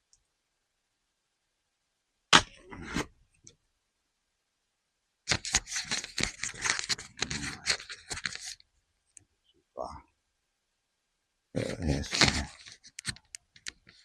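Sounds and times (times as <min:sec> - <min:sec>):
sharp knock: 0:02.3 - 0:02.6.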